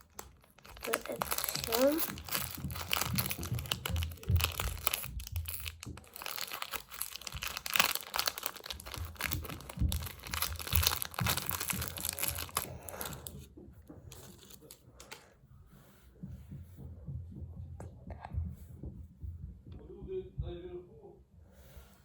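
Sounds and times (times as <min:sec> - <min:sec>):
plastic wrappers crinkling: 0:00.0 - 0:13.4, 0:14.1 - 0:15.2.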